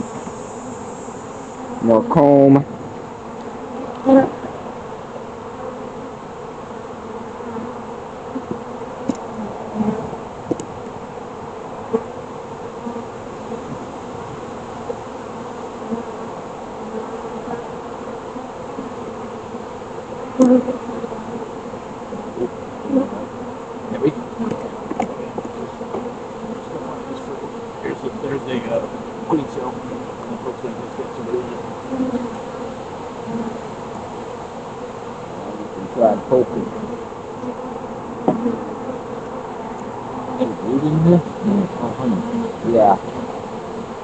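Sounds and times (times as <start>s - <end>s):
honeybees buzzing: 0.0s - 44.0s.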